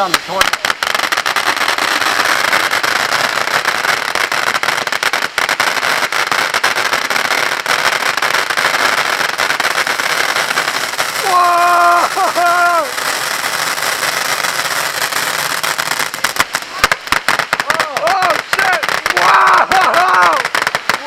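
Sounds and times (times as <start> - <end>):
fountain firework hissing and crackling: 0.0 - 21.0
person exclaiming whoa: 11.2 - 13.0, 17.7 - 21.0.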